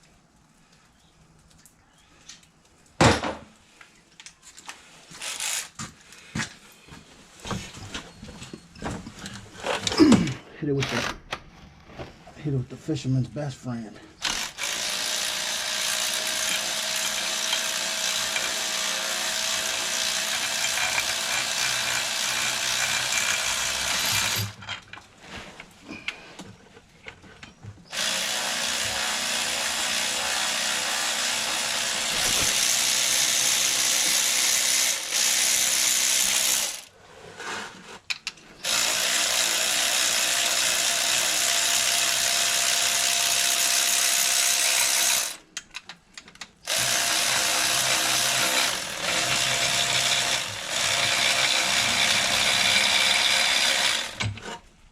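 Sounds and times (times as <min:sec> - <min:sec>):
impact wrench bursts: 0:05.2 - 0:05.8, 0:14.2 - 0:24.6.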